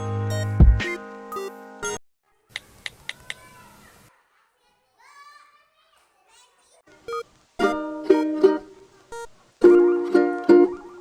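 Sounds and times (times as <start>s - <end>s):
faint background noise: 2.3s - 11.0s
sharp clicks: 2.5s - 3.4s.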